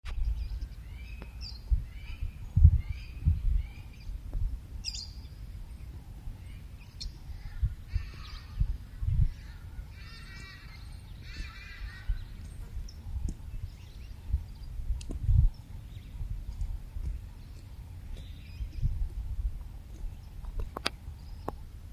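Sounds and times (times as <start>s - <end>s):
birds calling: 0.1s - 21.8s
low rumbling: 0.1s - 21.9s
harsh bird calls: 4.8s - 14.8s.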